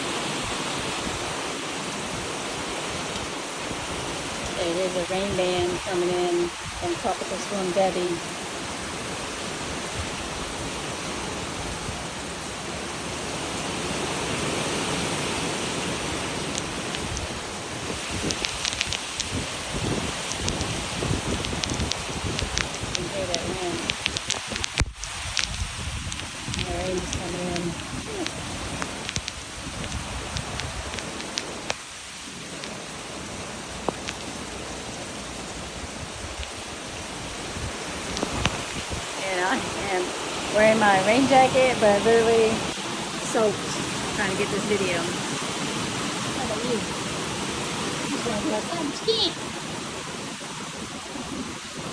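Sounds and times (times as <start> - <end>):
storm wind and rain rushing: 0.0 - 51.9
sharp ticks: 16.4 - 31.8.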